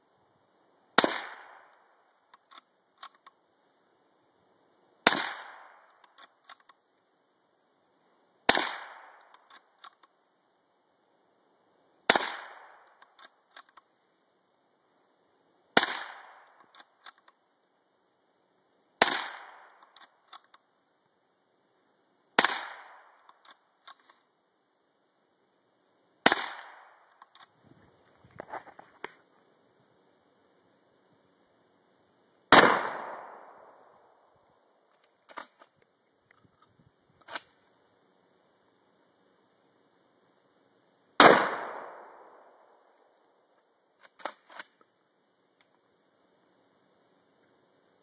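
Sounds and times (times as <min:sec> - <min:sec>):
gunshots: 0:01.0 - 0:01.7, 0:05.0 - 0:06.6, 0:08.5 - 0:09.6, 0:12.1 - 0:13.3, 0:15.8 - 0:16.9, 0:19.0 - 0:20.5, 0:22.4 - 0:23.6, 0:26.2 - 0:27.4, 0:32.5 - 0:33.7, 0:41.2 - 0:42.3.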